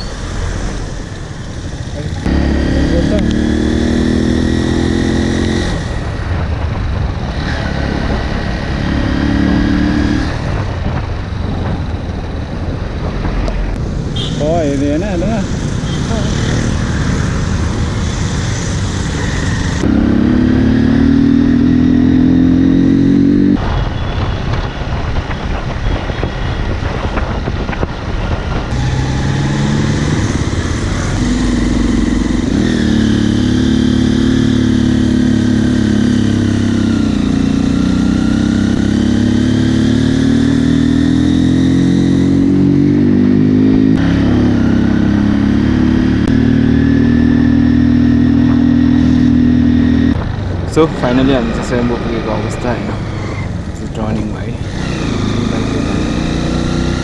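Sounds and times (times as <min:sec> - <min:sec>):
motorcycle engine running: 0:00.1 - 0:06.7, 0:28.7 - 0:57.0.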